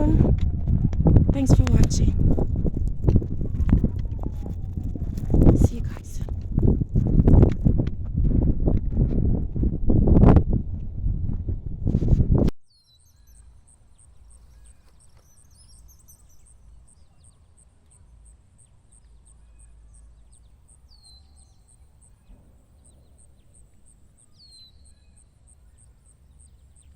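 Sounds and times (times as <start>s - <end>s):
low steady rumble: 0.0s - 12.5s.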